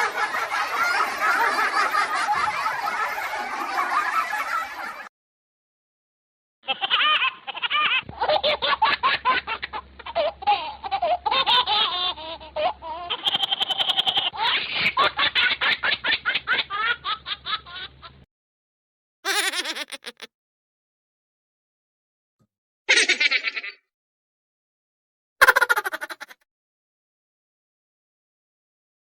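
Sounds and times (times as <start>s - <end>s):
hearty laughter: 0.0s - 5.1s, 6.7s - 18.0s, 19.3s - 20.3s, 22.9s - 23.8s, 25.4s - 26.4s.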